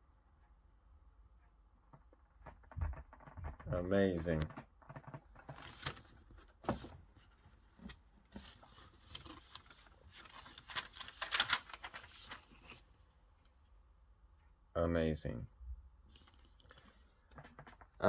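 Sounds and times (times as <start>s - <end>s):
rustling on a desk: 2.5s - 13.0s, 16.1s - 18.0s.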